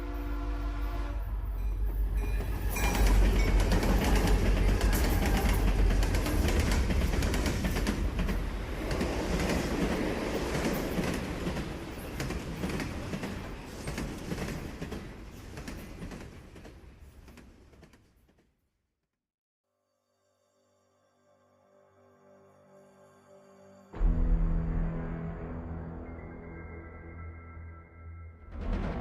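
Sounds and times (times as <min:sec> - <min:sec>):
train rumbling and clattering on rails: 0:00.0 - 0:18.6, 0:28.4 - 0:29.0.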